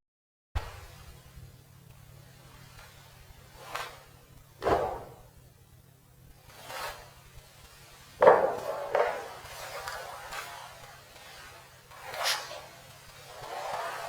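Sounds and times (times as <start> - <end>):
knocks and handling sounds: 4.6 - 5.3, 8.2 - 9.6.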